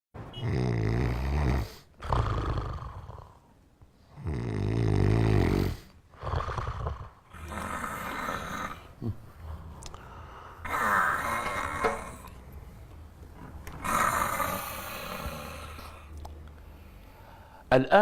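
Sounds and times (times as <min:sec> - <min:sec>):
person snoring loudly: 0:00.3 - 0:03.5, 0:04.1 - 0:12.4, 0:13.7 - 0:16.1.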